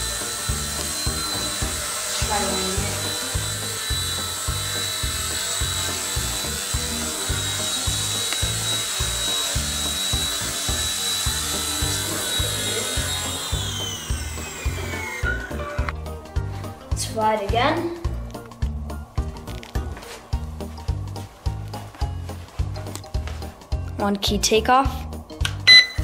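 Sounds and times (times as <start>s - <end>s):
rc helicopter rotor whining: 0.0s - 16.2s
background music with steady beat: 0.0s - 26.0s.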